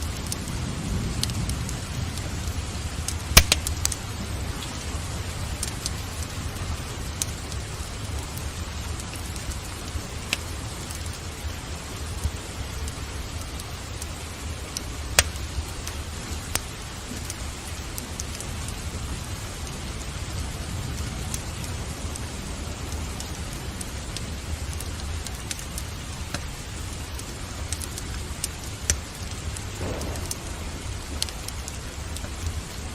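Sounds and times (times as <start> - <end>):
steady rain falling: 0.0 - 32.9
wood fire crackling: 0.0 - 32.9
low rumble: 29.7 - 32.7.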